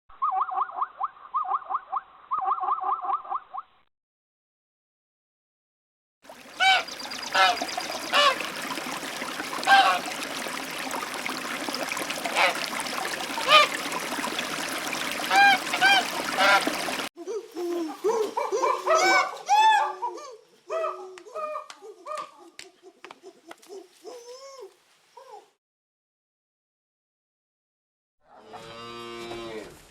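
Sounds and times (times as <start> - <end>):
splashing trickling water: 6.2 - 17.1
busy bird calls: 6.5 - 8.5, 9.6 - 10.1
geese honking: 6.6 - 8.8, 9.4 - 10.4, 12.2 - 14.4, 15.1 - 17.0.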